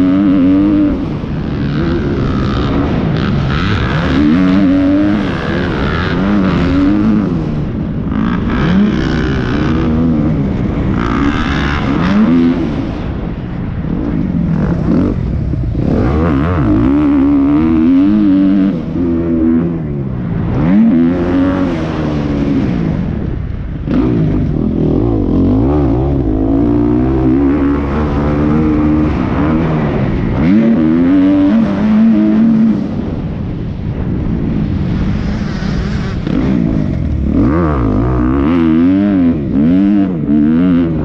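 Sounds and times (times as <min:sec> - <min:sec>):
dirt bike engine revving: 0:00.0 - 0:41.0.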